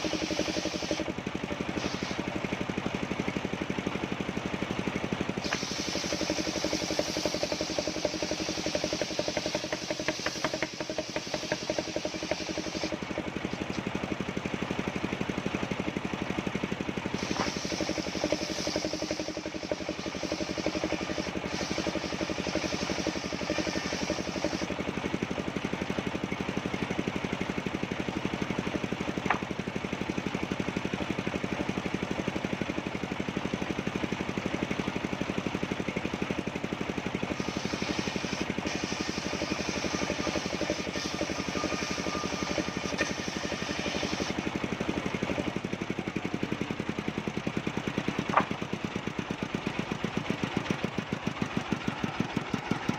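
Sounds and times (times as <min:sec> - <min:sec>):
saw cutting wood hiss: 0:00.0 - 0:01.1, 0:01.7 - 0:02.4, 0:05.3 - 0:13.9, 0:17.1 - 0:24.8, 0:37.2 - 0:45.6
sawmill engine running: 0:00.0 - 0:52.9.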